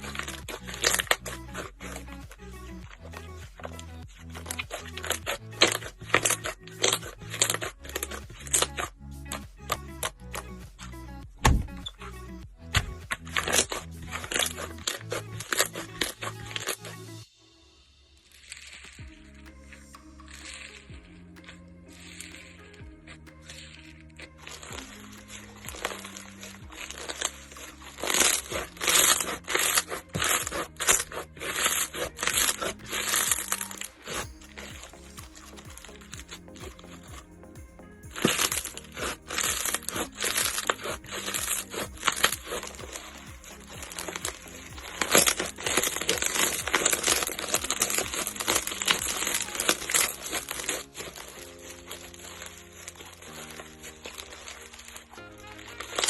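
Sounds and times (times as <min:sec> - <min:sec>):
soft background music: 0:00.0 - 0:56.0
slime squeezed crackling: 0:23.4 - 0:56.0.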